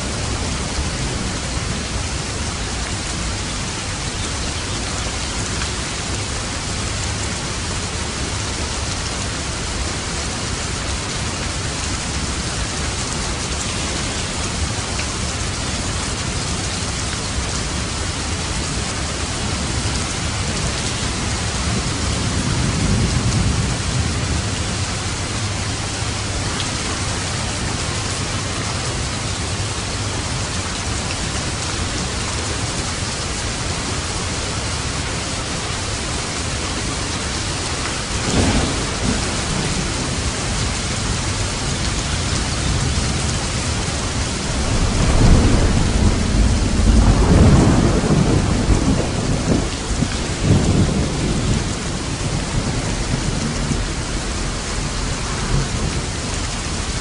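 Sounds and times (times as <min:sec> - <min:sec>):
heavy rain on a roof: 0:00.0 - 0:57.0
low rumble of thunder: 0:05.1 - 0:31.7, 0:36.8 - 0:57.0.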